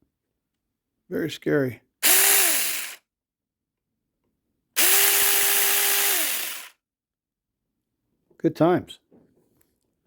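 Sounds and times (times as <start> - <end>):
electric chainsaw whirring: 2.0 - 3.0, 4.8 - 6.8.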